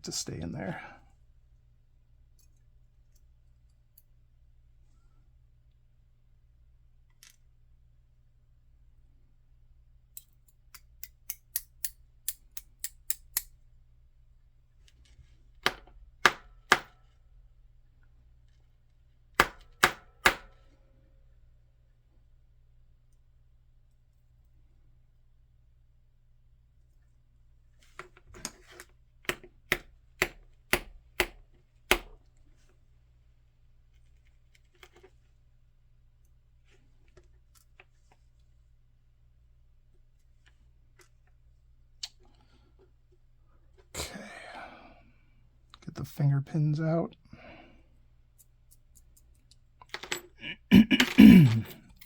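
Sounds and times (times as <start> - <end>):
small sharp metal clicks: 10.2 - 13.6.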